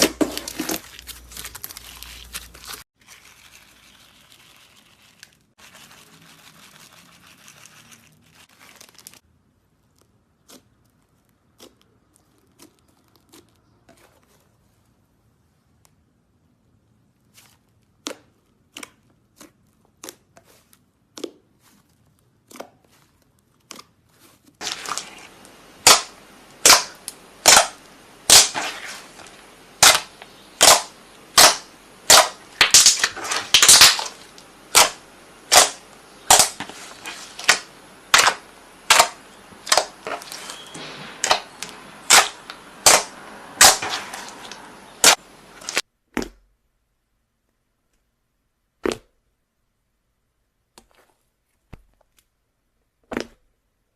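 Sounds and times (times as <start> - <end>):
sharp pops: 24.6 - 46.3.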